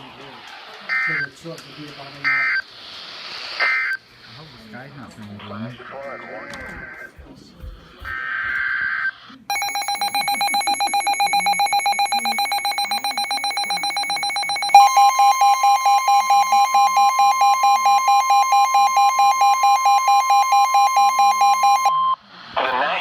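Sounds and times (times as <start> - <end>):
alert radio rapid beeping: 9.5 - 22.2
steady warning alarm tone: 9.5 - 22.2.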